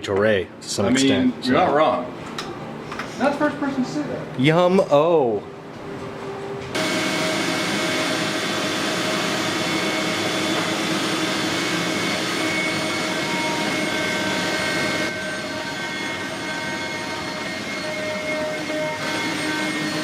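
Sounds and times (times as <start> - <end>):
workshop machine whirring: 0.7 - 20.0.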